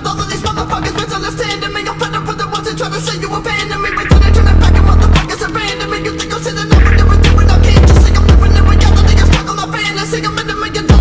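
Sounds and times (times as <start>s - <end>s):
heavy bass: 4.1s - 5.4s, 6.6s - 9.6s
sharp percussion beat: 6.7s - 8.6s.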